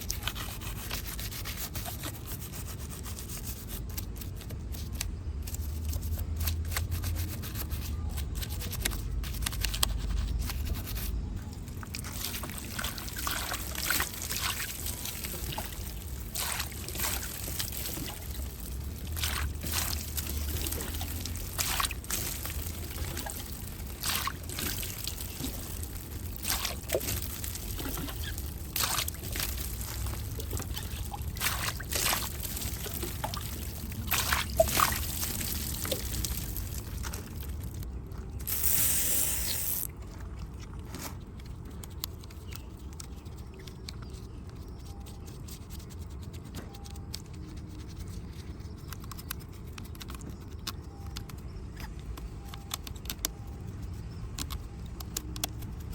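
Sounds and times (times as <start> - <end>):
water trickling and splashing: 9.3 - 40.6.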